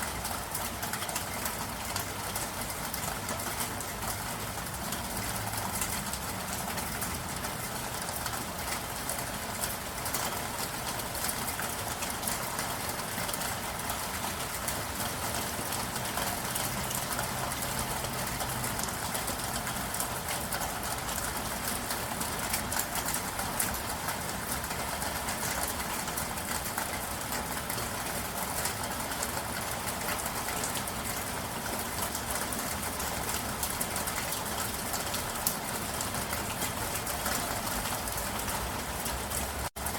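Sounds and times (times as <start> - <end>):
raindrops ticking: 0.1 - 39.9.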